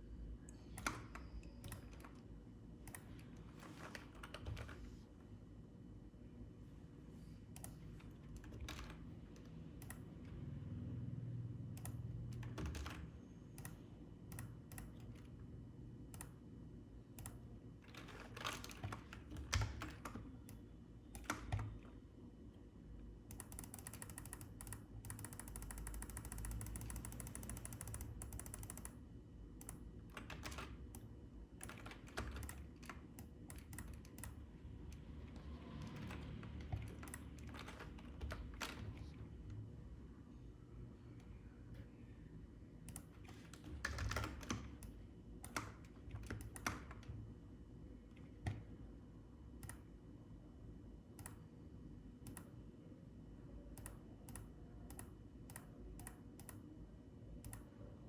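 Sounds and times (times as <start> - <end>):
computer keyboard clicking: 0.7 - 4.8, 7.5 - 10.4, 11.8 - 15.3, 16.1 - 16.4, 17.2 - 21.9, 23.3 - 29.0, 29.6 - 39.2, 42.8 - 47.2, 53.8 - 56.7.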